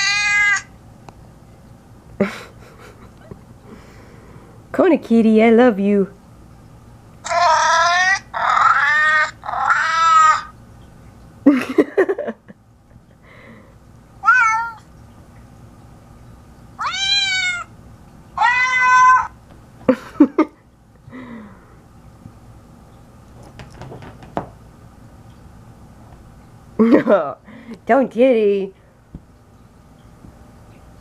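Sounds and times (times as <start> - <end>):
cat meows from phone app: 0.0 - 0.7, 14.2 - 14.8, 18.4 - 19.3
low rough cat calls: 0.0 - 0.7, 7.2 - 10.6, 14.2 - 14.9, 16.8 - 17.7, 18.4 - 19.4.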